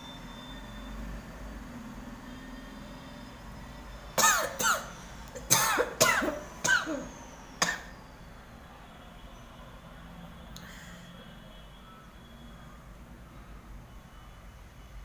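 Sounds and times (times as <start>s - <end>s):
woman coughing sharply: 4.2s - 7.9s.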